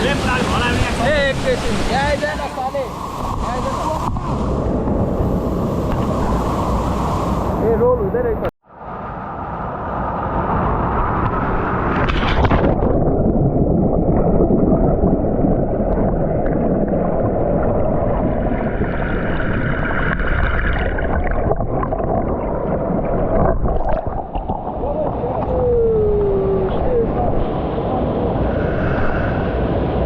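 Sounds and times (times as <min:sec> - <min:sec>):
stream water rushing and gurgling: 0:00.0 - 0:07.7.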